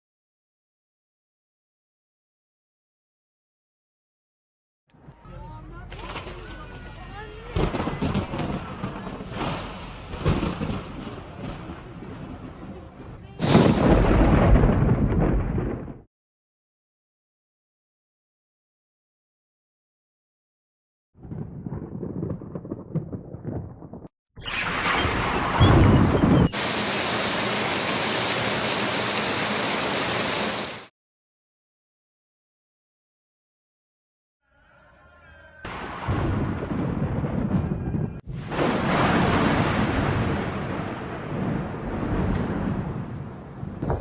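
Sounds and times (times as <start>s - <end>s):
loud thunder crash: 7.6s - 12.8s, 13.4s - 16.1s, 21.2s - 24.0s, 24.6s - 26.8s, 35.7s - 44.0s
thunder rumbles and cracks: 7.6s - 16.1s, 21.2s - 26.7s, 35.7s - 44.0s
heavy downpour: 24.5s - 30.9s, 38.3s - 44.0s.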